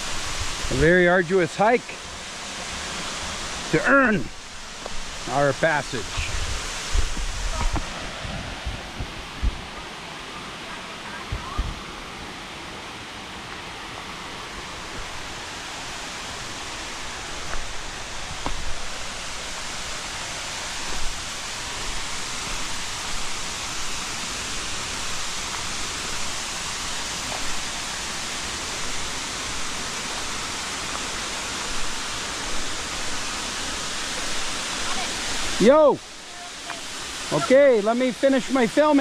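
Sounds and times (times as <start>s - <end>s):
waterfall rushing: 0.0s - 39.0s
microphone thumps: 6.4s - 9.6s.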